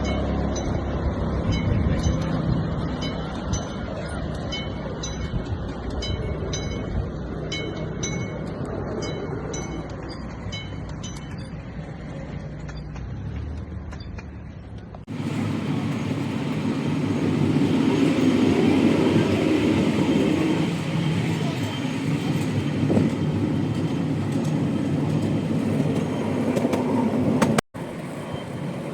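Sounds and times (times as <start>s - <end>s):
train rumbling: 0.0s - 28.9s.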